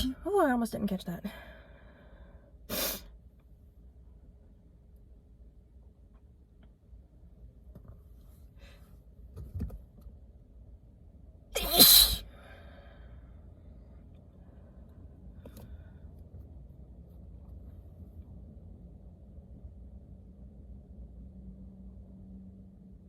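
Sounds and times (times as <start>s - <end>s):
woman sneezing: 11.6s - 12.3s.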